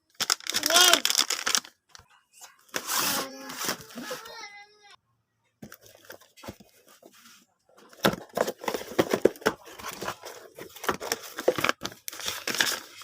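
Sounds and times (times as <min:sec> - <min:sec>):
crackling and crunching: 0:00.0 - 0:02.0.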